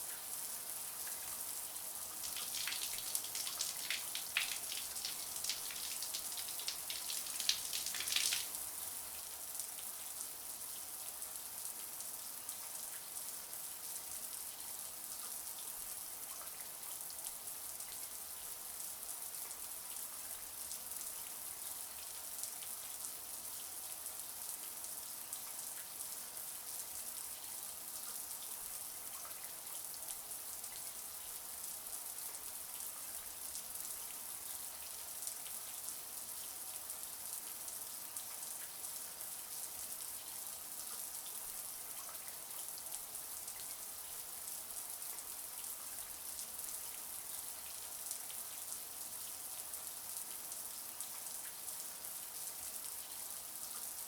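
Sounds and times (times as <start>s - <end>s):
shower water running: 2.1s - 8.6s
water splashes: 2.2s - 8.6s.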